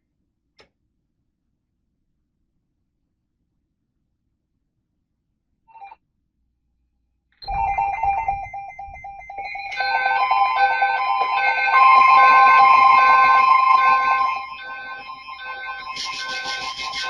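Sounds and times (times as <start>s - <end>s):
steady electronic alert tones: 7.4s - 17.0s.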